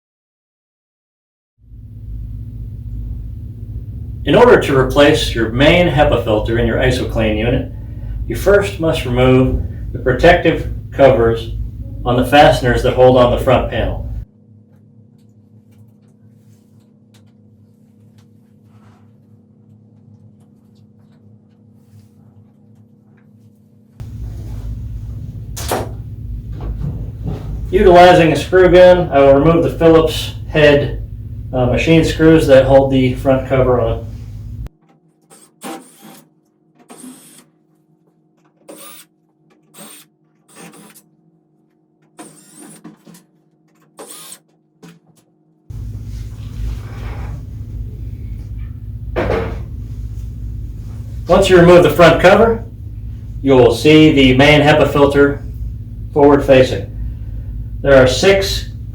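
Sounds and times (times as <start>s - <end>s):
low machine hum: 1.7s - 44.4s, 45.6s - 58.9s
soft scrapes: 17.6s - 19.4s, 45.8s - 47.7s
cordless screw gun whirring: 35.3s - 36.3s, 36.9s - 37.5s, 38.7s - 39.1s, 39.7s - 41.0s, 42.2s - 42.9s, 44.0s - 44.5s.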